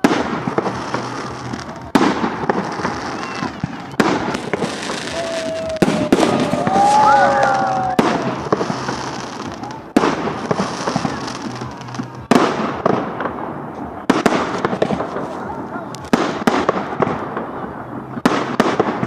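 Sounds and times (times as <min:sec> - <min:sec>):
whistling firework tones: 0:00.0 - 0:12.9
firework bangs: 0:00.0 - 0:19.0
fireworks crackling: 0:00.0 - 0:19.0.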